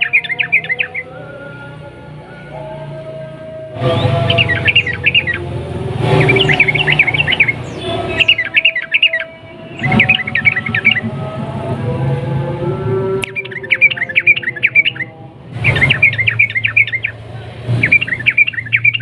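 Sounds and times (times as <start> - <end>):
bulbul rapid chirping song: 0.0 - 1.2, 3.8 - 11.1, 13.2 - 19.0.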